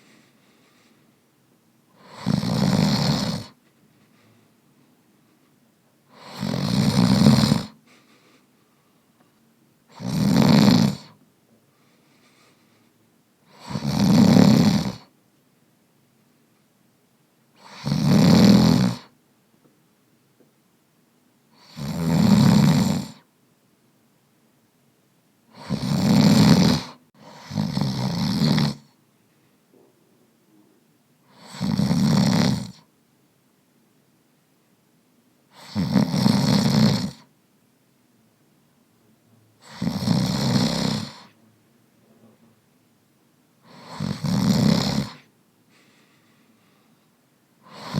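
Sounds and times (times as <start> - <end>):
person snoring: 2.0 - 3.6, 6.1 - 7.8, 9.9 - 11.2, 13.5 - 15.1, 17.6 - 19.1, 21.5 - 23.3, 25.5 - 28.9, 31.3 - 32.8, 35.5 - 37.3, 39.6 - 41.4, 43.6 - 45.3, 47.6 - 47.9.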